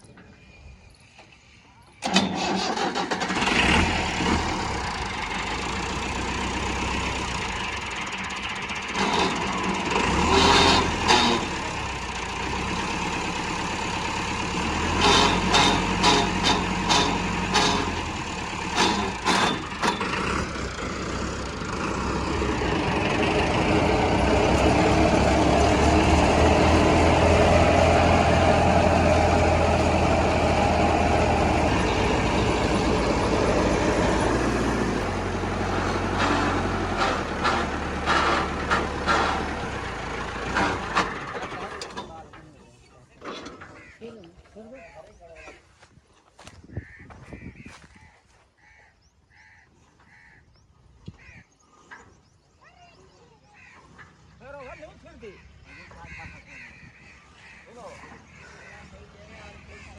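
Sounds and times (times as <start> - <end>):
tractor diesel engine under load: 2.0 - 44.2, 53.2 - 59.9
thresher clattering and knocking: 14.8 - 20.6.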